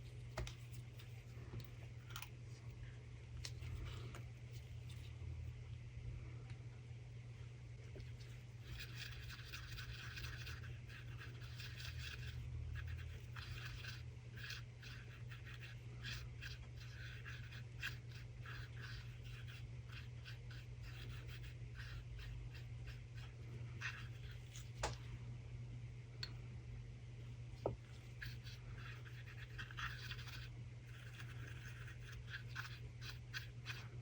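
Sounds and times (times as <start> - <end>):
steady low hum: 0.0 - 34.0
brush scratching in mould: 8.0 - 24.8, 27.8 - 34.0.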